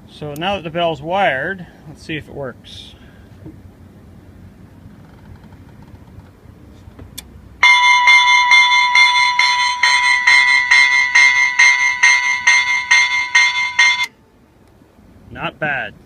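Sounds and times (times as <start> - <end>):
electronic locomotive bell ringing: 7.6 - 14.2.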